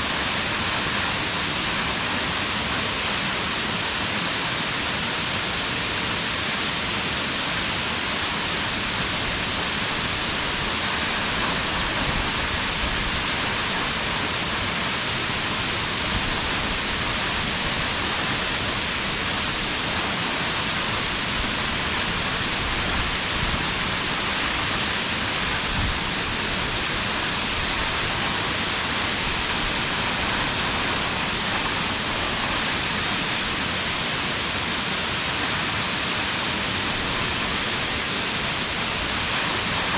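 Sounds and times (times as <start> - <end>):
waterfall roaring: 0.0 - 39.9.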